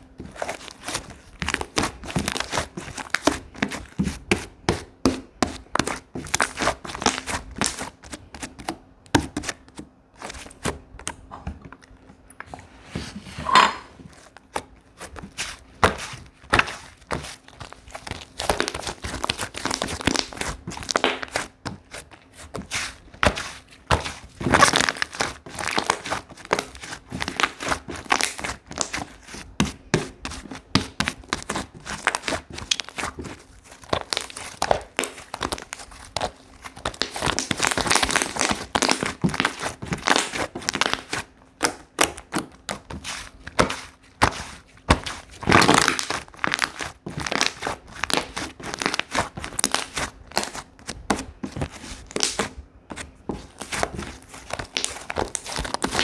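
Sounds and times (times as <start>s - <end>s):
slime squishing and popping: 14.4s - 22.0s, 23.2s - 56.0s.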